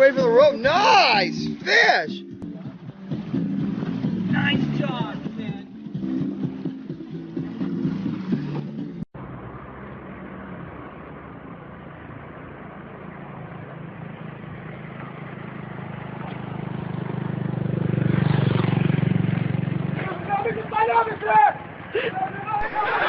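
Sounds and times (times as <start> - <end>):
engine humming: 0.0 - 23.0.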